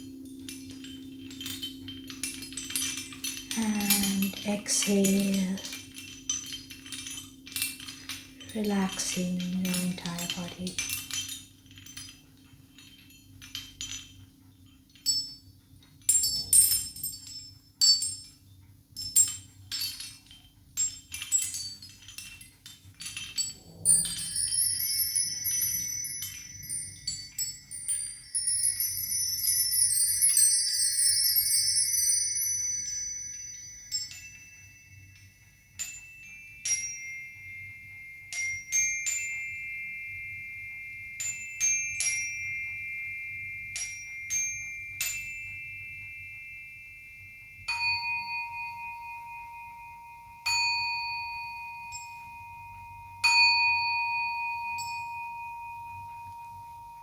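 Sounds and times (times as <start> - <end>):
high tinkling chimes: 0.0 - 57.0
low clear ringing tone: 23.3 - 57.0.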